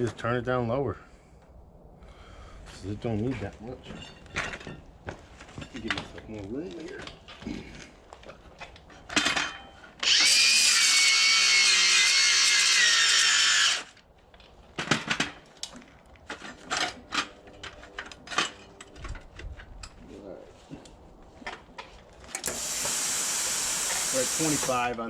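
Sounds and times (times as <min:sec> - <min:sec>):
plasma cutter hissing with high whine: 0:22.5 - 0:24.8.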